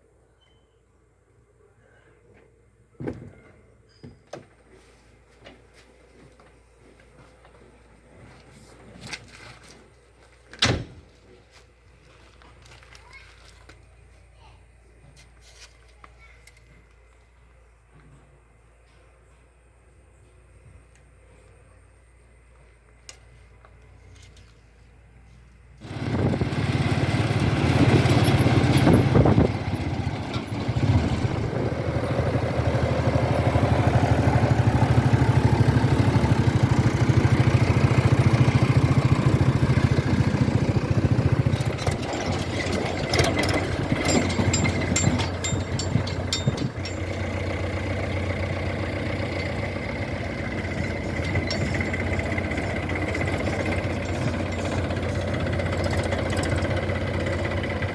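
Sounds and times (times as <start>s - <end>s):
diesel engine running: 24.7s - 57.9s
clicking and rattling: 25.8s - 57.9s.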